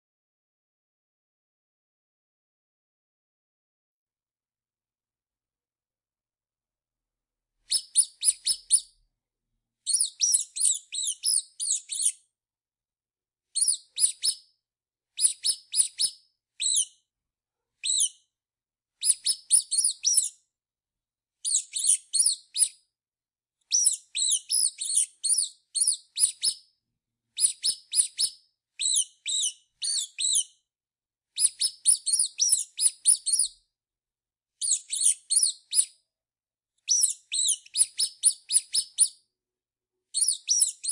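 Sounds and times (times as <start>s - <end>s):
mouse squeaking: 7.7s - 8.9s, 9.9s - 12.2s, 13.6s - 14.5s, 15.2s - 17.0s, 17.8s - 18.2s, 19.0s - 20.4s, 21.4s - 22.8s, 23.7s - 26.7s, 27.4s - 30.6s, 31.4s - 33.6s, 34.6s - 36.0s, 36.9s - 39.2s, 40.2s - 40.9s.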